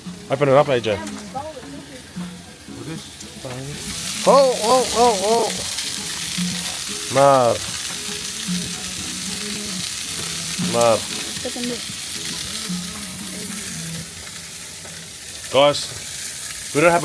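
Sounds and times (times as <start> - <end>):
food sizzling while frying: 0.0 - 17.0
person exclaiming: 4.2 - 5.8.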